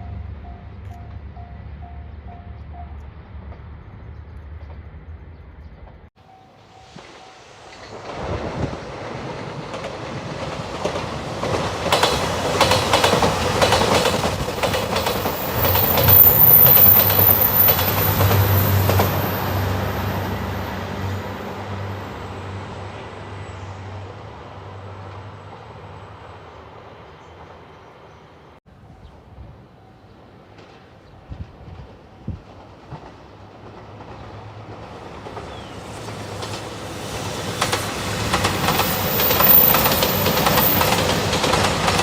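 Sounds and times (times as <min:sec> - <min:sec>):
train passing: 0:00.0 - 0:42.0
train wheels clattering: 0:06.3 - 0:21.1, 0:30.4 - 0:42.0.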